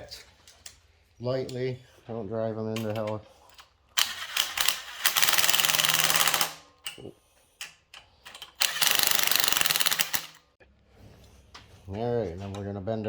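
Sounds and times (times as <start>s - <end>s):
impact wrench rattling: 2.8s - 7.0s, 7.6s - 10.4s.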